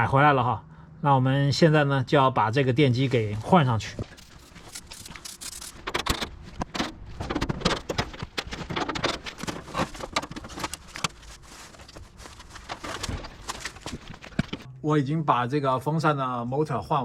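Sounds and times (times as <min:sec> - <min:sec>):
hand tools clicking and rattling: 0:04.2 - 0:14.7.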